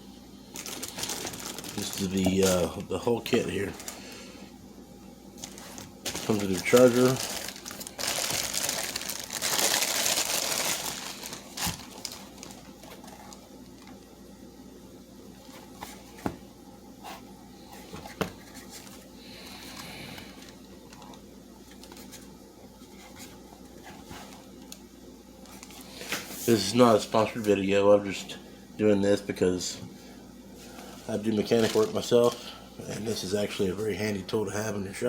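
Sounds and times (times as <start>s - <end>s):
packaging crinkling: 0.5s - 4.2s, 5.4s - 14.0s, 25.4s - 26.5s, 31.1s - 32.6s.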